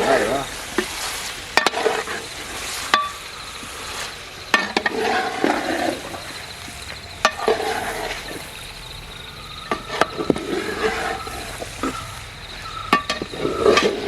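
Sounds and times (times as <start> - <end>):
chicken sizzling in a pan: 0.0 - 8.5
spoon scraping pan: 9.6 - 14.0.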